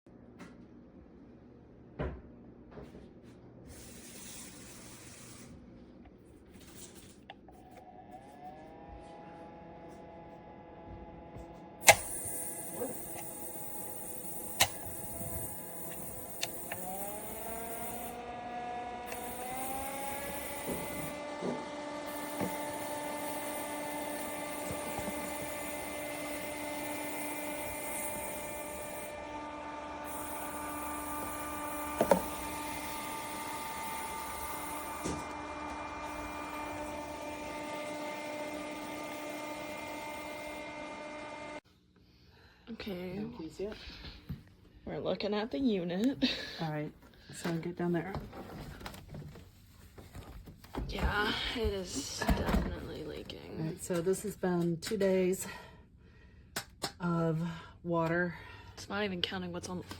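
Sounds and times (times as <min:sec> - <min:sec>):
air conditioner motor whining: 0:01.2 - 0:41.6.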